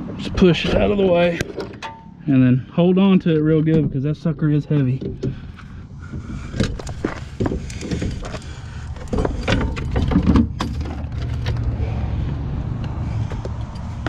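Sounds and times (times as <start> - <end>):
metal knocks and scrapes: 3.4 - 11.8.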